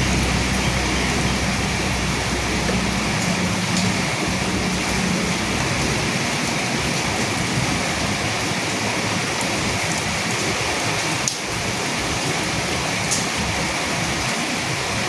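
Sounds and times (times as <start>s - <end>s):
low rumble: 0.0s - 9.2s
steady rain: 0.0s - 15.0s.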